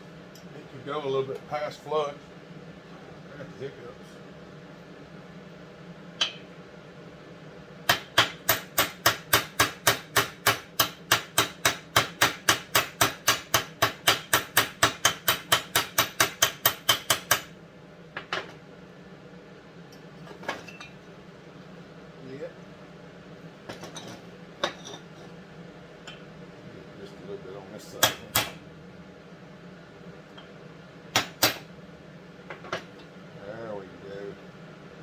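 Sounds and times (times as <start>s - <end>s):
hammer striking a metal punch: 7.9s - 17.5s, 28.0s - 28.6s, 31.1s - 31.7s.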